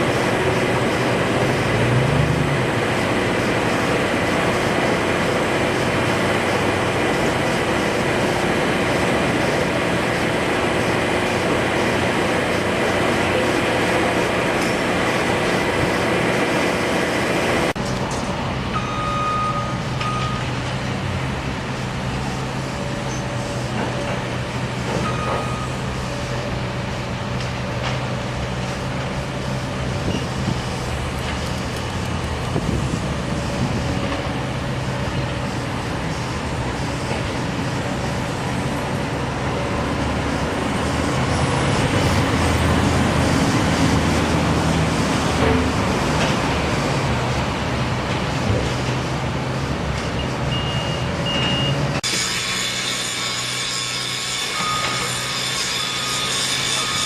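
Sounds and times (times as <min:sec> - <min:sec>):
heavy engine running: 0:00.0 - 0:57.0
short reversing beeps: 0:18.8 - 0:20.5, 0:25.0 - 0:25.9, 0:50.2 - 0:51.8.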